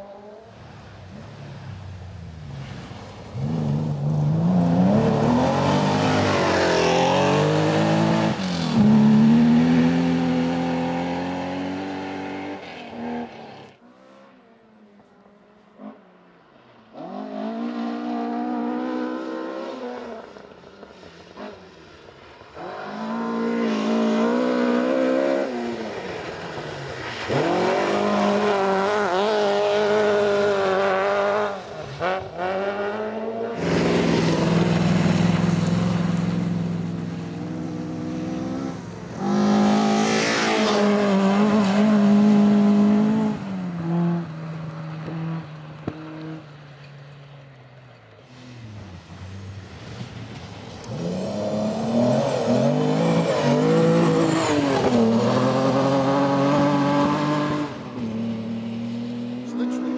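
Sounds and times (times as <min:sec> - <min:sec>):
rally cars revving past: 0:02.6 - 0:14.6, 0:15.8 - 0:46.9, 0:48.2 - 0:59.9.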